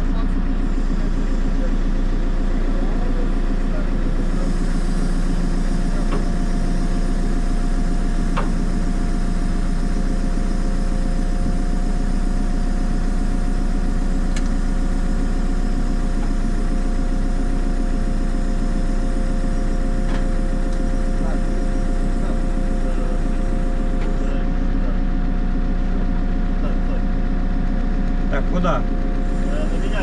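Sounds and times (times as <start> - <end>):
diesel engine idling: 0.0 - 30.0
steady whine: 0.0 - 30.0.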